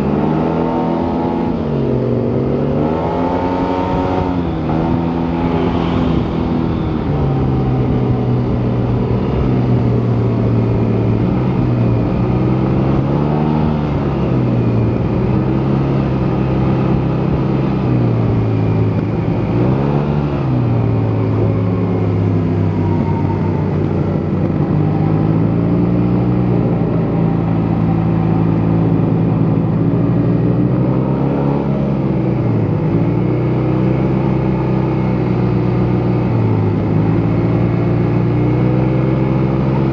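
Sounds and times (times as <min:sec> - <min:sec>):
scooter engine running: 0:01.0 - 0:30.9.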